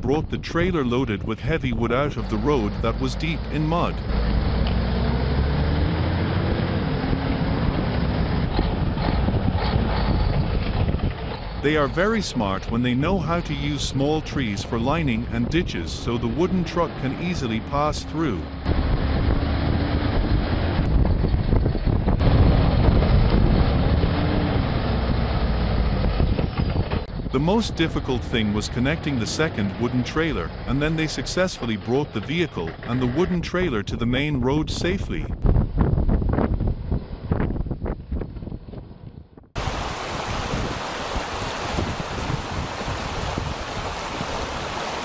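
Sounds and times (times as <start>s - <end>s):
heavy vehicle engine under load: 1.9s - 11.6s, 13.7s - 33.8s
wind buffeting microphone: 3.8s - 13.8s, 18.7s - 27.8s, 34.4s - 45.0s.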